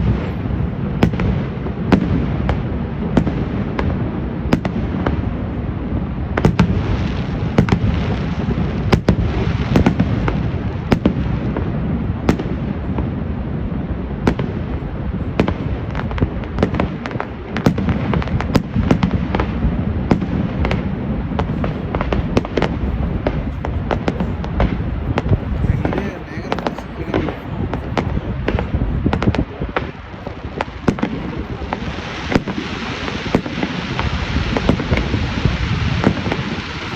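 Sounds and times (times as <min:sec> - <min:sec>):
fireworks booms and cracks: 0:00.0 - 0:36.9
low rumble: 0:18.0 - 0:32.1.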